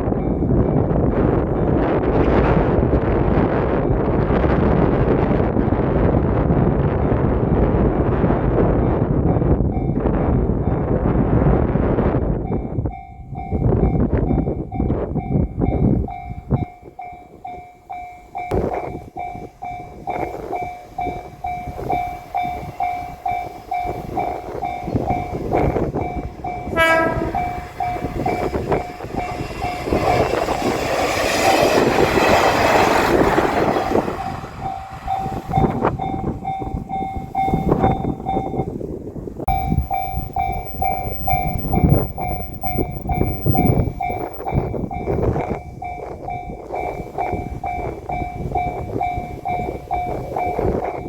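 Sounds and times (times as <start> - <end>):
trains rumbling and clacking: 0.0 - 51.0
level-crossing alarm ringing: 19.3 - 38.8, 39.5 - 51.0
train horn blast: 26.6 - 30.8.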